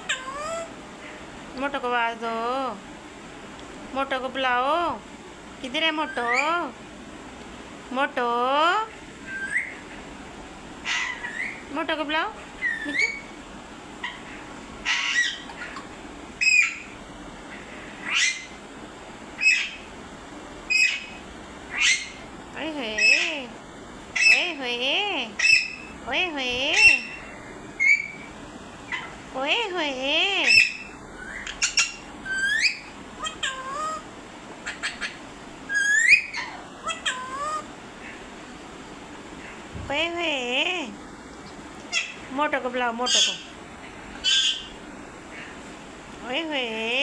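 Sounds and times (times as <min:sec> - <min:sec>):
parrot squawking: 0:00.0 - 0:00.8, 0:05.9 - 0:06.7, 0:09.2 - 0:10.0, 0:10.8 - 0:11.7, 0:12.6 - 0:13.4, 0:14.0 - 0:18.6, 0:19.4 - 0:19.9, 0:20.7 - 0:22.3, 0:22.9 - 0:23.5, 0:24.1 - 0:24.6, 0:25.4 - 0:26.0, 0:26.6 - 0:29.2, 0:30.3 - 0:38.2, 0:41.9 - 0:42.3, 0:43.0 - 0:45.6.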